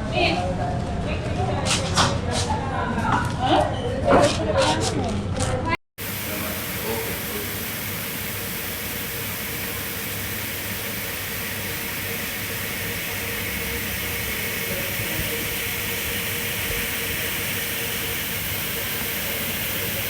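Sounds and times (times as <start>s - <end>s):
even hiss: 6.0s - 20.0s.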